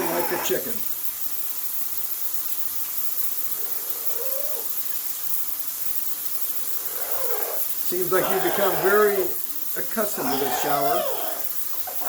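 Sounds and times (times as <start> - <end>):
parrot hooting call: 0.0 - 0.6, 3.5 - 4.7, 6.7 - 12.0
shower water running: 0.0 - 12.0.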